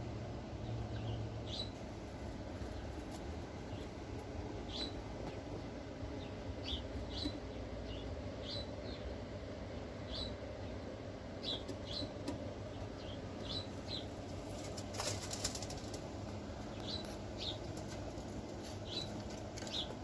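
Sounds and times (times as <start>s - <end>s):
low background noise: 0.0s - 20.0s
pigeon wings flapping: 14.6s - 16.1s.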